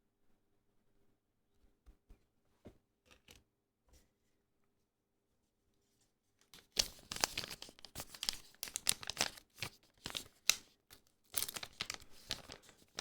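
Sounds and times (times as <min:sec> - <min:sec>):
wrapper tearing and crinkling: 0:06.6 - 0:10.7, 0:11.3 - 0:13.0.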